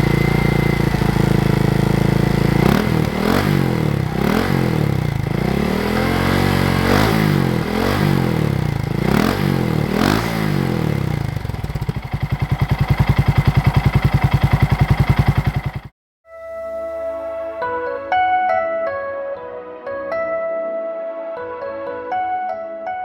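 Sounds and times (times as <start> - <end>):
motorcycle engine revving and idling: 0.0 - 16.0
soft music: 16.3 - 23.0.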